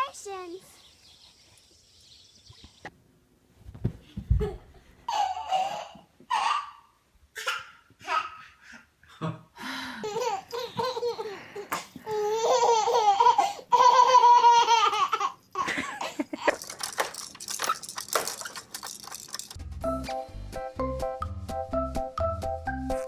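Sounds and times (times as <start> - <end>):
baby laughing: 4.4 - 8.6, 10.0 - 16.9.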